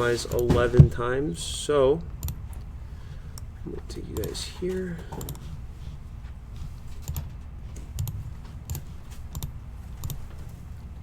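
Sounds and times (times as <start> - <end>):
low steady hum: 0.0 - 11.0
computer keys clicking: 0.2 - 0.5, 2.1 - 2.7, 3.3 - 3.5, 4.1 - 5.5, 6.9 - 10.6.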